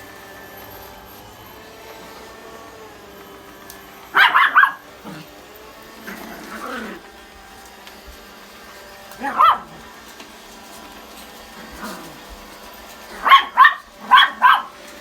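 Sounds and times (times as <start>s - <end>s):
small dog barking: 4.1s - 5.3s, 9.1s - 9.9s, 13.1s - 14.8s.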